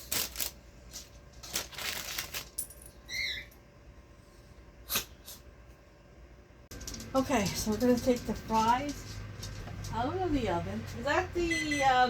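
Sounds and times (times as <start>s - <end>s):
kitchen clicks and knocks: 6.7s - 10.3s.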